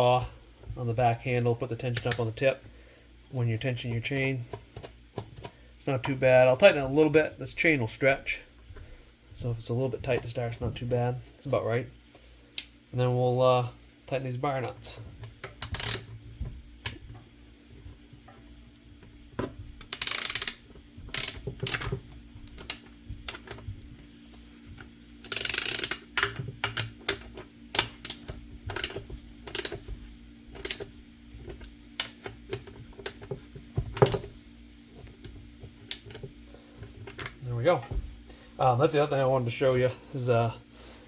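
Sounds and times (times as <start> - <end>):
faint steady hum: 0.0 - 41.0
ratchet clicking: 15.6 - 16.1, 19.9 - 21.9, 25.3 - 26.3, 28.0 - 29.8, 30.6 - 30.8.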